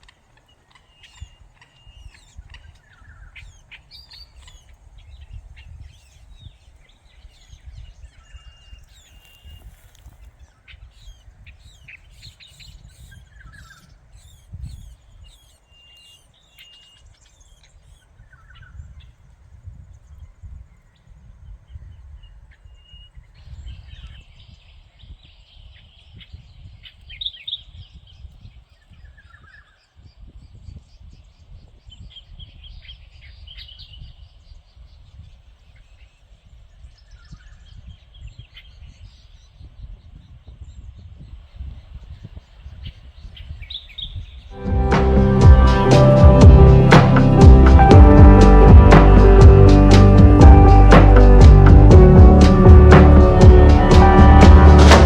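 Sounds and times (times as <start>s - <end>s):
wild birds chirping: 0.0s - 19.2s
wind rumble on microphone: 1.0s - 15.4s, 17.0s - 55.0s.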